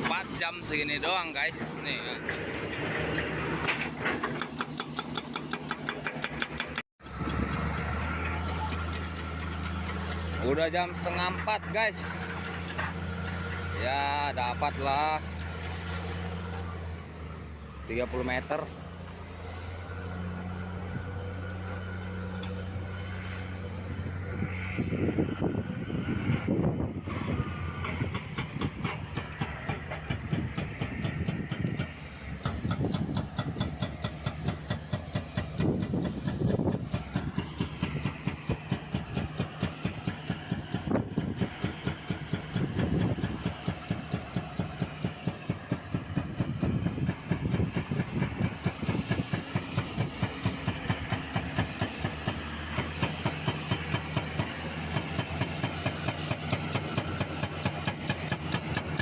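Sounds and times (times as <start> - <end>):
diesel engine running: 0.0 - 59.0
hydraulic breaker hammering concrete: 4.1 - 15.8, 27.8 - 59.0.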